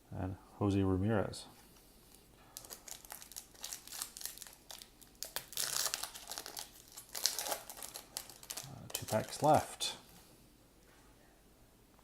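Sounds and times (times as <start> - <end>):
foil wrapper crinkling: 2.5 - 9.7.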